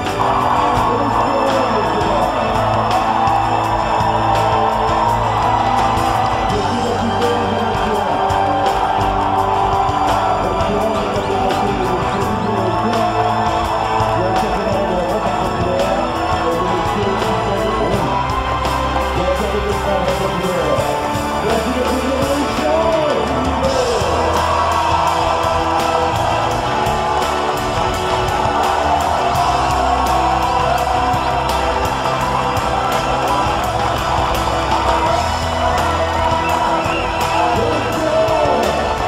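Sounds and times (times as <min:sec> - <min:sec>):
music with a steady beat: 0:00.0 - 0:39.0.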